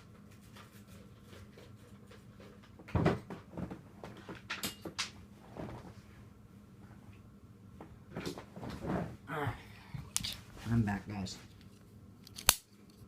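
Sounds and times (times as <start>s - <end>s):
clicks and knocks of handling things: 2.1s - 5.2s, 11.5s - 13.0s.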